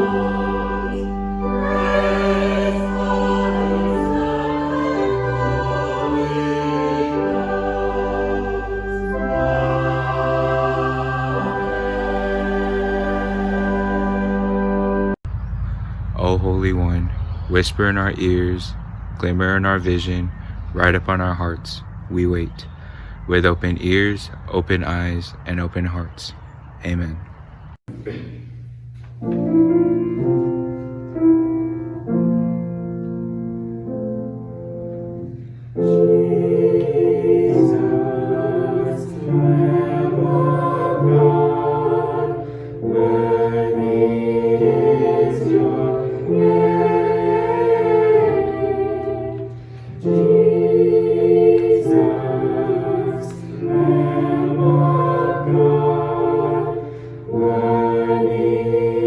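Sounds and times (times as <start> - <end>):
choir singing a hymn: 0.0 - 17.0, 33.8 - 59.0
keyboard playing held chords: 0.0 - 25.7, 29.2 - 59.0.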